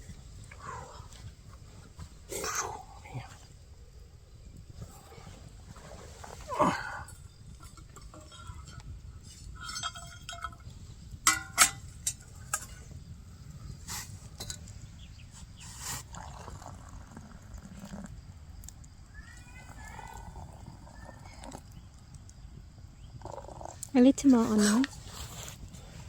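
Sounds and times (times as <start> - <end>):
light clinks of dishes: 7.6 - 10.7, 11.3 - 12.8.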